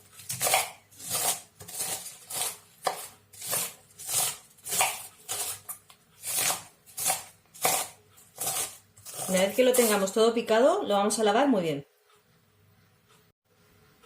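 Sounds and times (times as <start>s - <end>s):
knife chopping cabbage on board: 0.0s - 10.1s.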